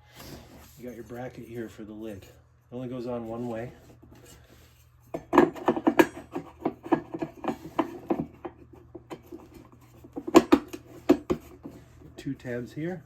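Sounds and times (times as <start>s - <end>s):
plastic parts clicking and knocking: 5.2s - 11.7s.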